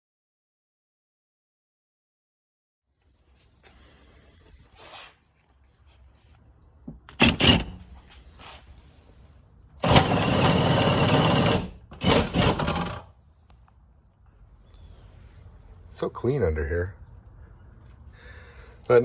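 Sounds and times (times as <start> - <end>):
hand-held power tool running: 9.8 - 13.0.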